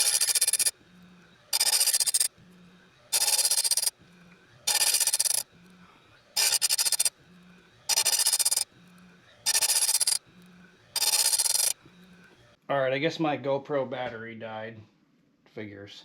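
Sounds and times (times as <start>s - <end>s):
chain grinder rasping: 0.0s - 0.7s, 1.5s - 2.3s, 3.1s - 3.9s, 4.6s - 5.4s, 6.4s - 7.1s, 7.9s - 8.7s, 9.4s - 10.2s, 11.0s - 11.8s.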